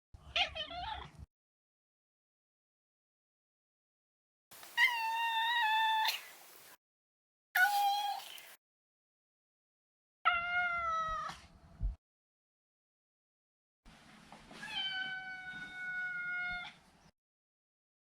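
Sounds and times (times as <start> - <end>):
cat meowing: 4.8 - 6.2, 14.6 - 16.8.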